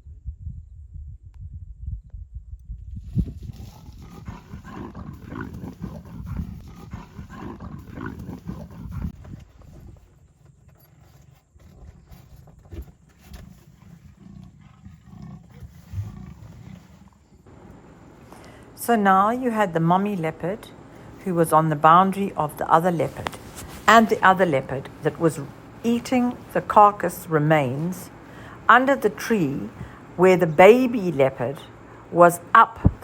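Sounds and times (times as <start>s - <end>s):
leopard growling: 3.1s - 18.8s, 19.4s - 32.8s.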